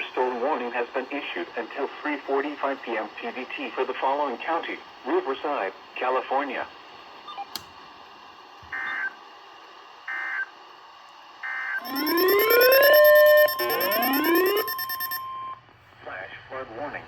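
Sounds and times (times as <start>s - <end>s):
rising siren-like sweep: 11.8s - 15.2s
data burst header noise: 11.8s - 15.3s
steady warning alarm tone: 11.8s - 15.6s.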